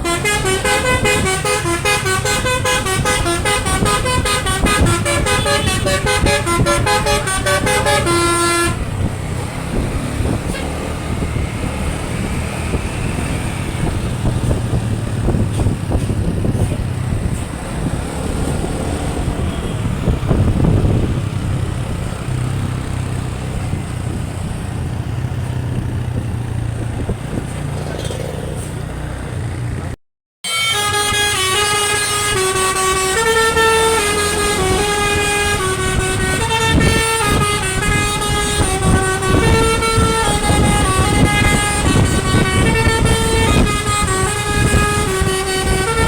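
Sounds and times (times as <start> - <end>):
bus horn playing musical notes: 0.0 - 11.2, 30.4 - 46.0
bus engine humming: 0.0 - 46.0
street noise: 0.0 - 46.0.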